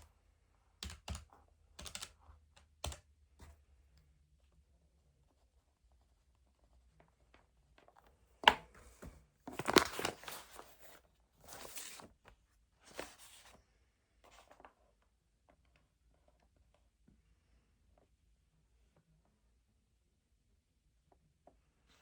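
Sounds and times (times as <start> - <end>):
rustling and crinkling: 8.7 - 13.6.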